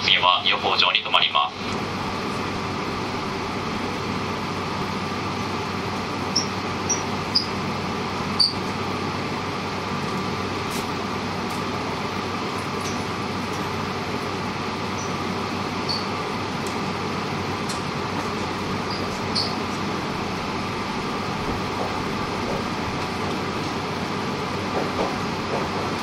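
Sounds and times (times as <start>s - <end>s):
train interior hum and hiss: 0.0s - 26.0s
high squeaks: 8.4s - 8.6s, 15.8s - 16.1s, 18.8s - 19.7s.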